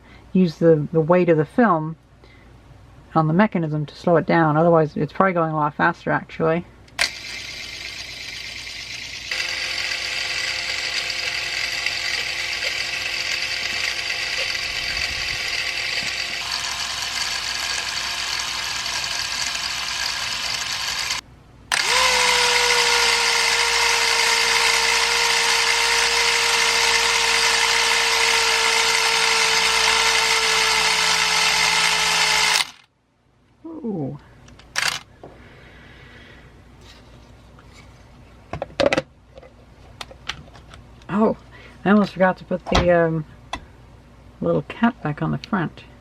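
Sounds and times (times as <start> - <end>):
clockwork camera mechanism whirring: 6.9 - 32.9, 34.6 - 35.1.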